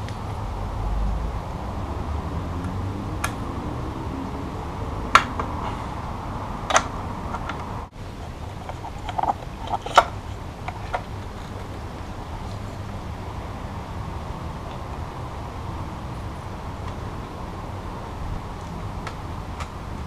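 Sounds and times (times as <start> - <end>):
steady background rumble: 0.0 - 20.0
tools clicking and knocking: 8.2 - 11.6.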